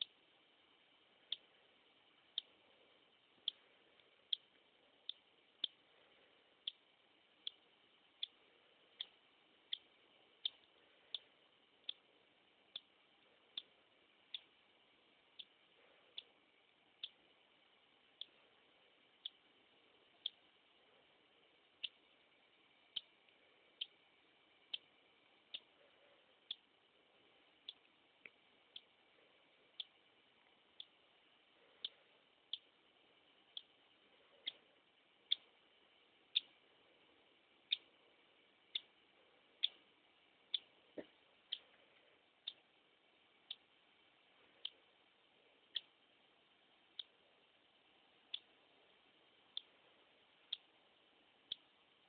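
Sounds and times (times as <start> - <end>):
chick making high ticking sounds: 1.2 - 20.8, 21.6 - 25.8, 26.4 - 26.8, 27.5 - 29.0, 29.7 - 32.8, 33.4 - 35.5, 36.3 - 36.6, 37.6 - 38.0, 38.6 - 39.0, 39.6 - 41.7, 44.5 - 44.9, 45.6 - 46.0, 46.9 - 47.2, 48.2 - 48.6, 49.5 - 49.8, 50.4 - 50.8, 51.4 - 51.8.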